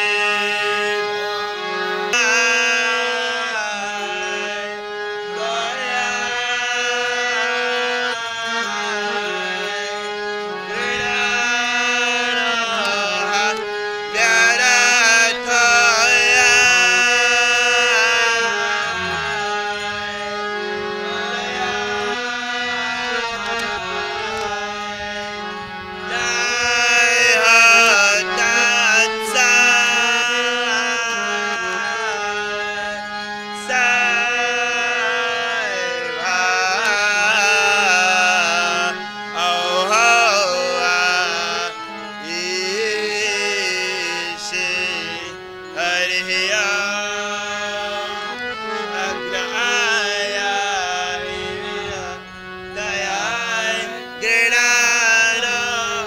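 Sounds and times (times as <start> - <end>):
sliding devotional melody: 0.0 - 56.0
steady held drone: 0.0 - 56.0.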